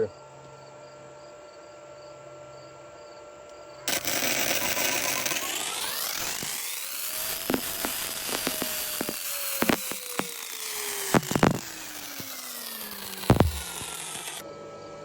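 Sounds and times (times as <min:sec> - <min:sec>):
rising whine: 0:03.9 - 0:14.4
welder humming: 0:03.9 - 0:14.4
welding arc crackling: 0:03.9 - 0:14.4.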